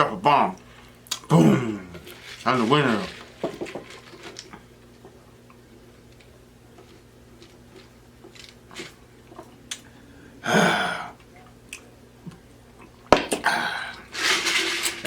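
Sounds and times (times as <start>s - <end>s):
wet mouth clicks and smacks: 1.0s - 1.3s
breathy exhale or burp: 1.3s - 2.0s, 10.4s - 11.2s, 13.4s - 14.1s.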